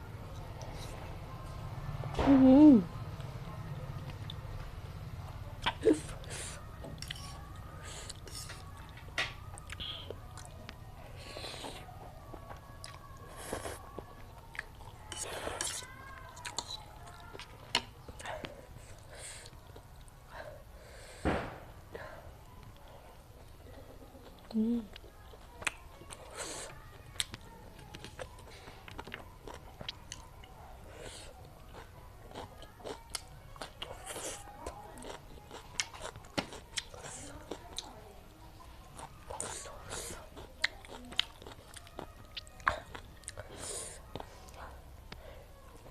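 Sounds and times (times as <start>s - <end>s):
person chewing food: 5.6s - 20.2s, 22.6s - 38.0s, 38.9s - 45.2s
food crunches: 39.0s - 43.4s.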